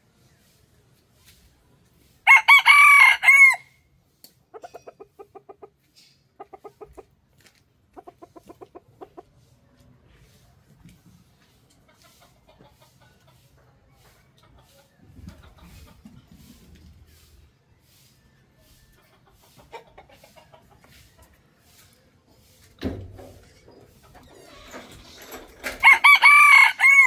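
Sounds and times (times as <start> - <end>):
rooster crowing: 2.3 - 3.8, 25.8 - 27.0
rapid clucking: 7.9 - 9.4.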